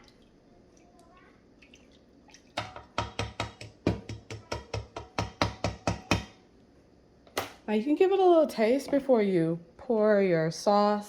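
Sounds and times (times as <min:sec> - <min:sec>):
utensil knocking against bowl: 0:02.6 - 0:06.4.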